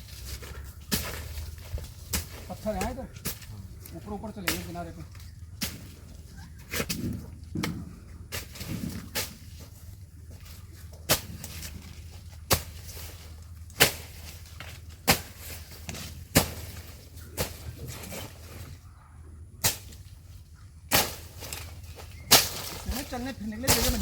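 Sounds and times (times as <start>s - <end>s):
blade swishing through grass: 0.0s - 3.6s, 10.4s - 18.7s, 20.9s - 24.0s.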